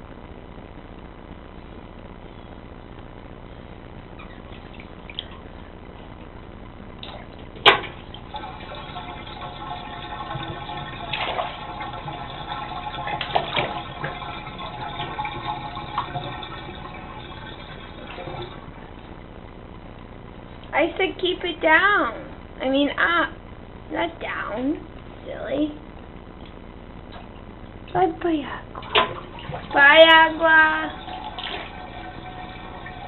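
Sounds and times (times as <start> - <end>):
bathtub water draining: 7.0 - 19.1, 28.7 - 33.0.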